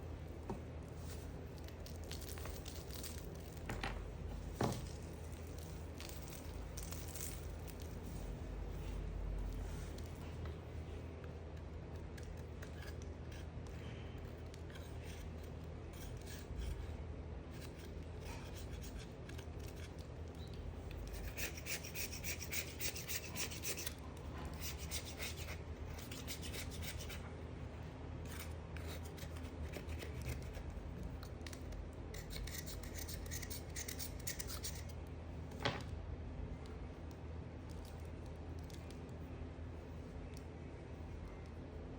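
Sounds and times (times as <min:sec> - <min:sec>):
knife scraping soap: 0:11.4 - 0:27.3, 0:28.2 - 0:35.0.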